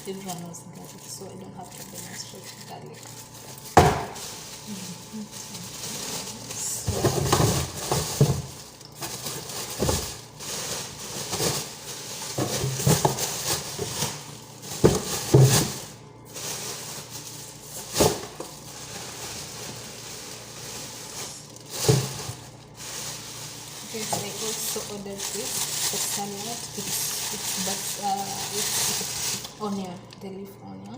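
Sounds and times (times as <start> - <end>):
bags and wrapping rustling: 0.0 - 30.9
produce knocking and thudding: 3.6 - 4.4, 6.1 - 15.9, 21.0 - 22.5.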